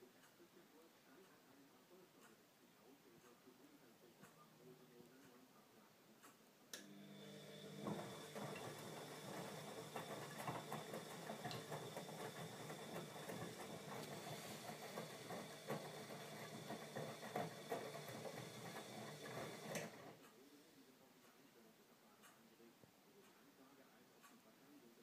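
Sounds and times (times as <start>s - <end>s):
washing machine whine: 6.8s - 20.2s
water and laundry patter in drum: 7.3s - 20.1s.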